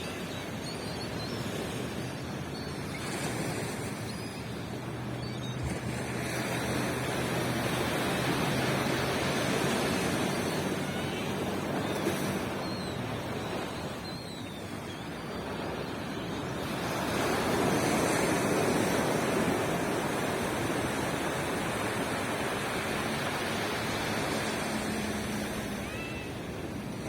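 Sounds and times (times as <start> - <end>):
ocean surf washing on beach: 4.9 - 14.0, 15.4 - 27.0.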